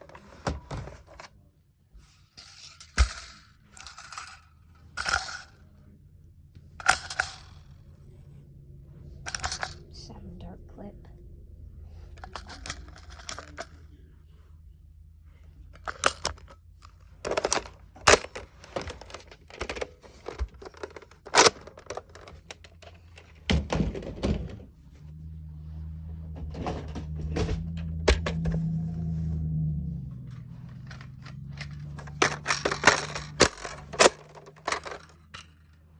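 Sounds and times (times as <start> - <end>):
steady low hum: 0.0 - 35.9
toy blasters clicking and knocking: 6.8 - 7.7, 9.3 - 9.8, 15.8 - 16.6, 17.2 - 24.4, 30.8 - 35.6.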